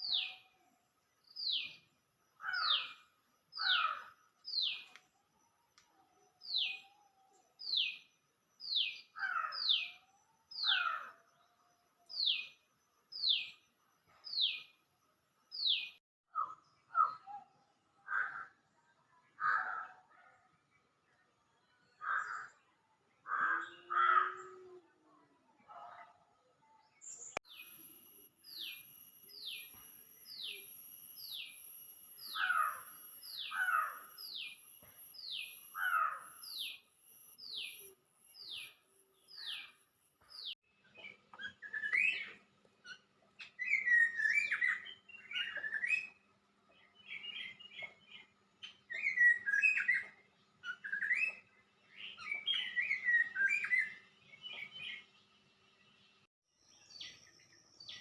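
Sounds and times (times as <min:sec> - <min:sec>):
warbling chattering birdsong: 0:27.1 - 0:46.0
lower downslurred bird calls: 0:27.5 - 0:46.2.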